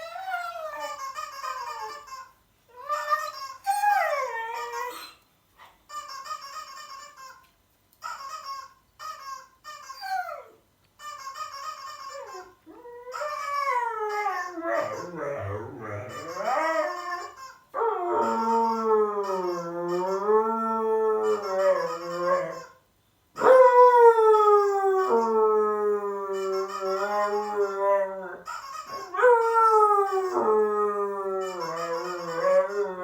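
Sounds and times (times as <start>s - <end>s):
husky howling: 12.7s - 22.6s, 23.4s - 33.0s.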